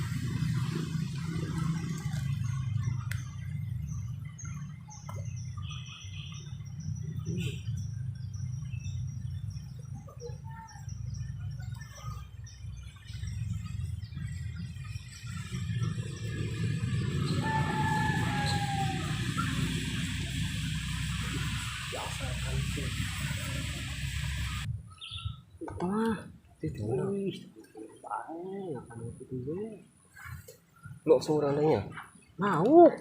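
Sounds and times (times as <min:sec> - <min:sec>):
steady low rumble: 0:00.0 - 0:25.6
small bird chirping: 0:01.5 - 0:25.6.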